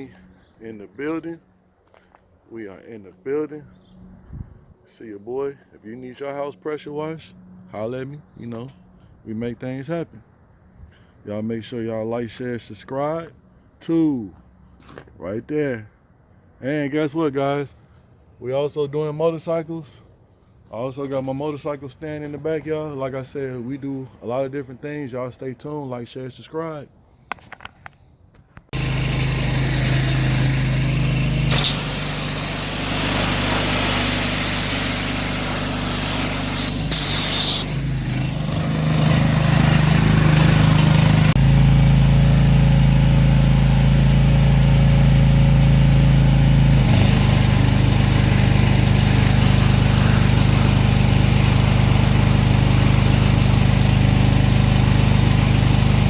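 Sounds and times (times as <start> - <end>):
pressure washer engine running: 28.8 - 56.0
hiss: 31.5 - 37.7.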